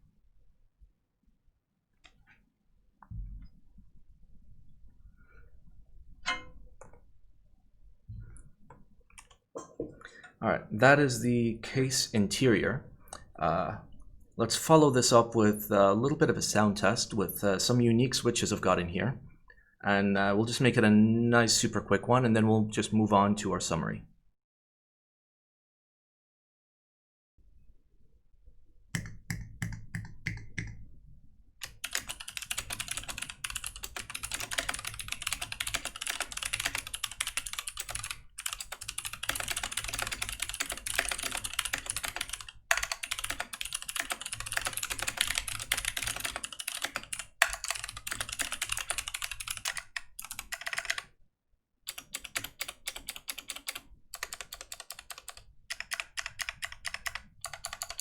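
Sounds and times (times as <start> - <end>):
mechanical keyboard typing: 31.6 - 51.1, 51.9 - 58.0.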